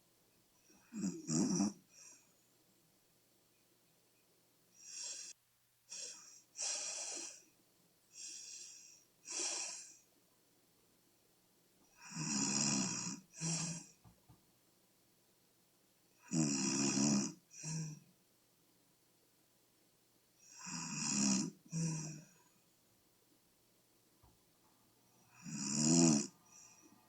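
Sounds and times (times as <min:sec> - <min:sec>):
woman snoring with low rattle: 0:00.7 - 0:02.2, 0:06.0 - 0:07.4, 0:08.3 - 0:10.0, 0:12.0 - 0:14.0, 0:16.2 - 0:18.1, 0:20.4 - 0:22.4, 0:25.3 - 0:26.9
hissing breaths: 0:04.8 - 0:07.4, 0:08.1 - 0:10.0.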